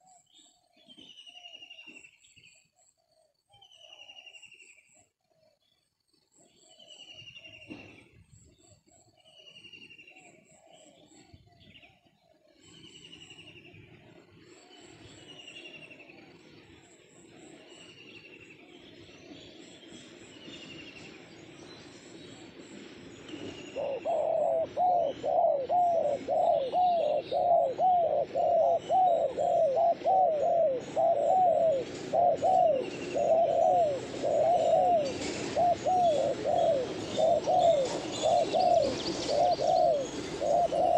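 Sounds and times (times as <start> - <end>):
dove cooing: 23.5 - 40.9.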